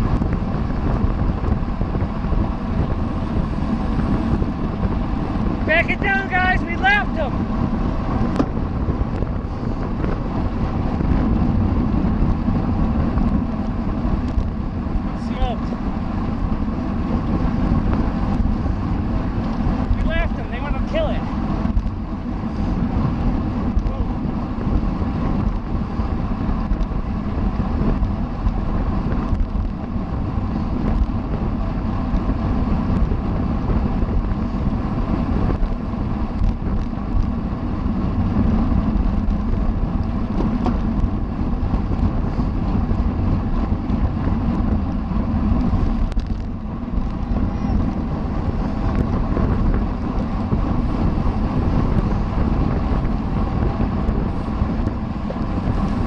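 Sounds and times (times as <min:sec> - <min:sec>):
low tyre and drivetrain rumble: 0:00.0 - 0:56.0
wind buffeting microphone: 0:00.0 - 0:56.0.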